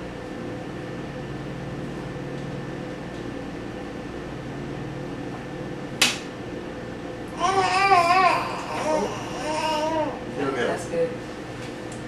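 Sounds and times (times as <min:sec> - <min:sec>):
steady machine hum: 0:00.0 - 0:12.0.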